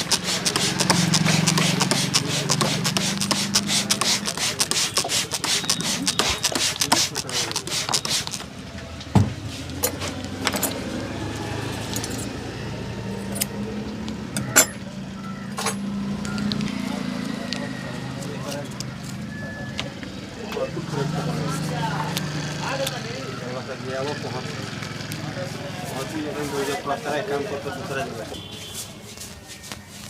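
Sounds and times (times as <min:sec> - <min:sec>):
light rubbing: 0:00.0 - 0:08.6.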